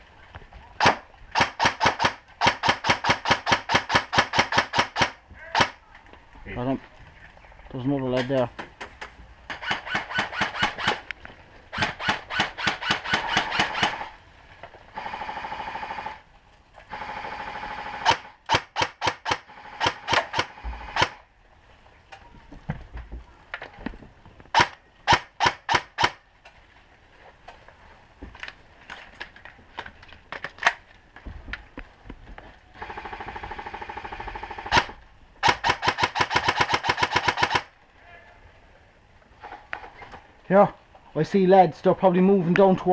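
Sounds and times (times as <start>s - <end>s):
airsoft full-auto bursts: 0.8s - 5.8s, 9.5s - 11.0s, 11.7s - 14.1s, 15.0s - 16.2s, 16.9s - 21.2s, 24.6s - 26.2s, 32.8s - 37.7s
airsoft single shots: 34.6s - 37.7s.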